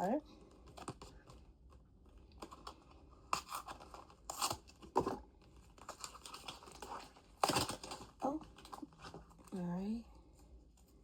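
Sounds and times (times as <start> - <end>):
packaging crinkling and tearing: 0.6 - 9.5.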